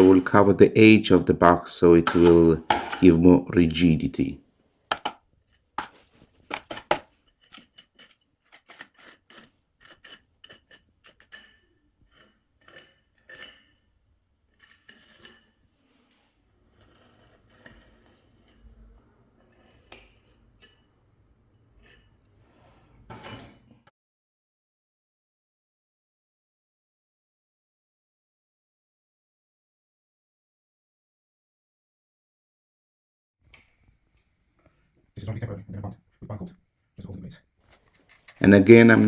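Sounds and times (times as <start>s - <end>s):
tool scraping: 0.0s - 4.3s, 4.9s - 23.8s.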